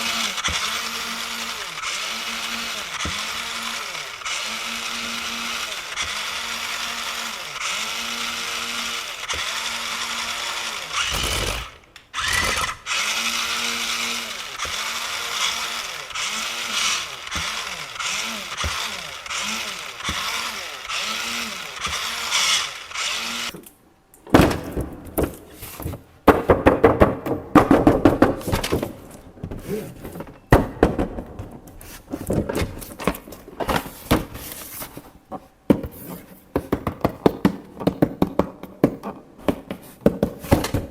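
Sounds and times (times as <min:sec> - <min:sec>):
toy electric motor whining: 0:00.0 - 0:23.6.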